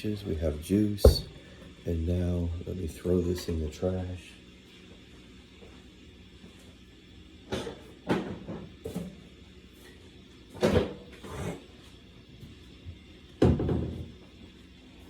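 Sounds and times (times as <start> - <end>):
cupboard doors knocking and clunking: 1.0 - 1.5.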